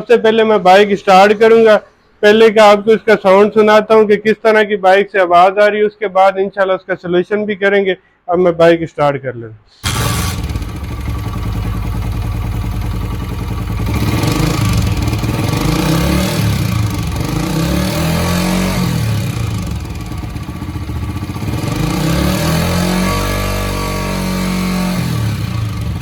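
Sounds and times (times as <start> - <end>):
motorcycle engine revving: 9.8 - 26.0.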